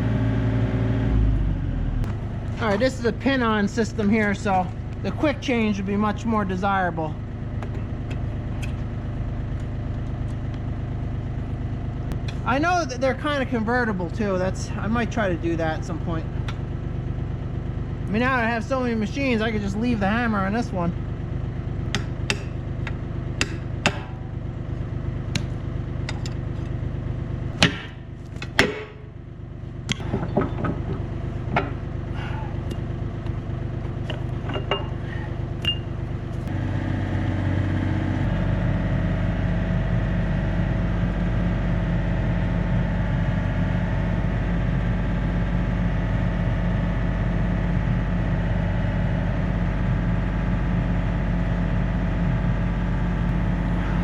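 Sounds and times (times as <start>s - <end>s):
diesel engine running: 0.0s - 54.0s
sharp knocks and clanks: 21.8s - 24.3s, 25.3s - 26.7s, 27.6s - 29.1s, 29.9s - 36.5s.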